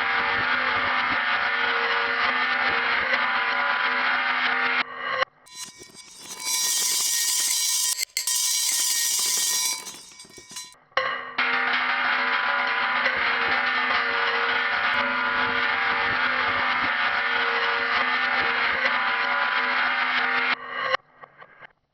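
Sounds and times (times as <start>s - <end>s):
clatter of small ticks: 5.5s - 10.8s
marbles rolling on track: 5.5s - 10.8s
ringing hum: 5.5s - 10.8s.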